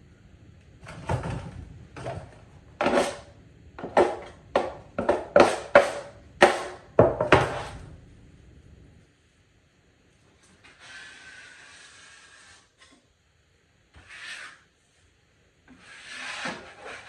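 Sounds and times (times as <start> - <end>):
drywall tools scraping: 0.8 - 7.9, 10.4 - 13.1, 13.9 - 14.8, 15.7 - 17.0.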